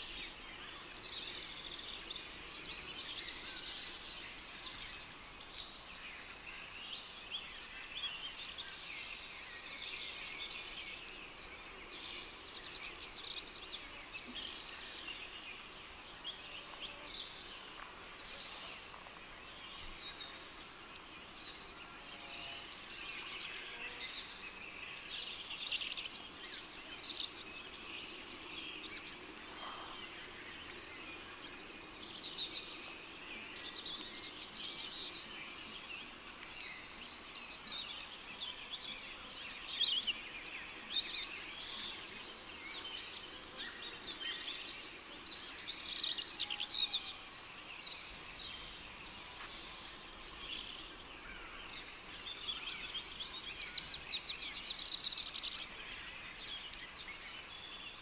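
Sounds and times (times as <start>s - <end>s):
cricket chirping: 47.2s - 58.0s.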